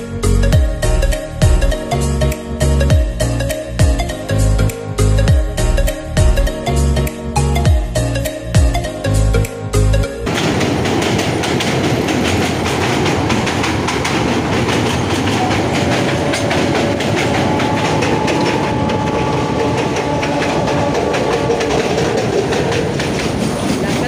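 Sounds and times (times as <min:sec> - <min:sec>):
toy train coaches rumbling: 0:10.3 - 0:24.0
wheels clacking over rail joints: 0:10.3 - 0:24.0.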